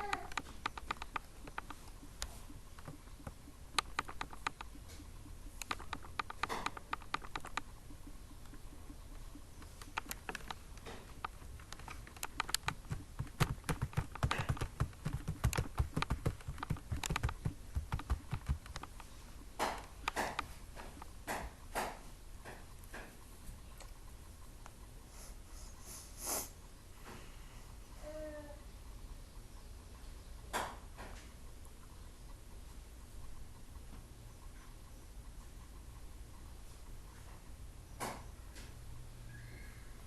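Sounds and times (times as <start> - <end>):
typing on computer keyboard: 0.0 - 1.9, 2.8 - 4.8, 5.6 - 7.7, 9.7 - 19.1.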